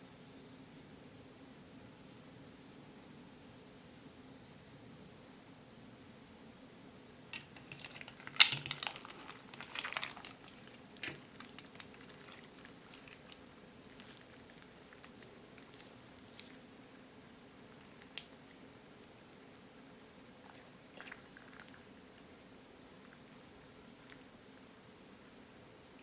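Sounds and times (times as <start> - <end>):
slime squished with beads crackling: 7.4 - 16.4.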